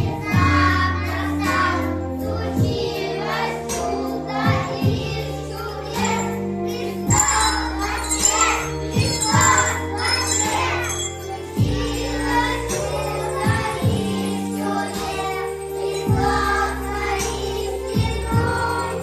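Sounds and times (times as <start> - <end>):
song with singing and bells: 0.0 - 19.0.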